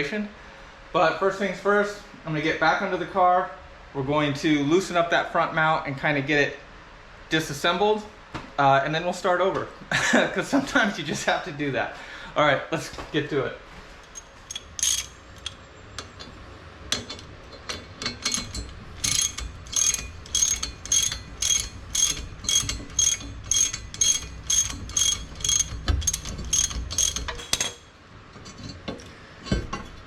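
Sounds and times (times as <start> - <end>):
ratchet wrench clicking: 14.1 - 16.3, 16.9 - 27.8.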